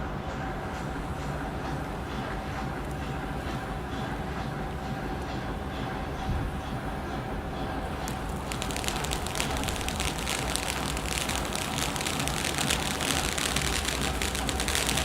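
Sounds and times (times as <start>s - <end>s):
crackling firework fountain: 7.9s - 15.0s.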